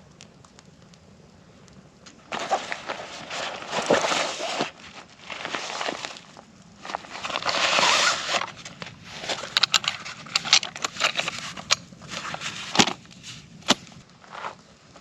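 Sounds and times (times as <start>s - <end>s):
gear rustling: 2.3s - 15.0s
clicks snaps and scrapes: 6.9s - 14.6s.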